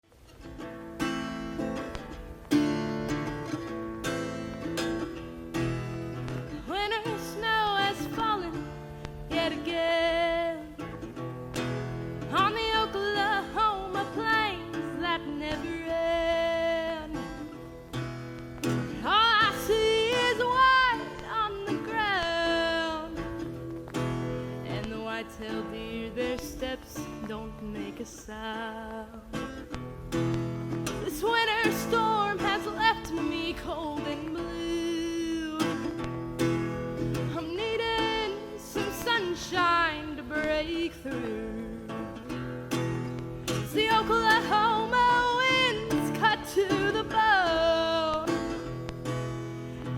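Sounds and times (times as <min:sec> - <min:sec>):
acoustic guitar strums: 0:00.0 - 0:49.9
person singing: 0:06.2 - 0:11.0, 0:12.2 - 0:17.8, 0:18.8 - 0:23.6, 0:24.6 - 0:29.4, 0:30.9 - 0:36.3, 0:37.0 - 0:42.5, 0:43.5 - 0:49.0.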